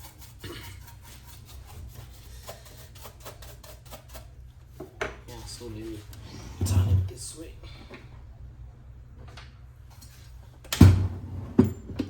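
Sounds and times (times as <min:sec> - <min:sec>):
low steady hum: 0:04.5 - 0:12.0.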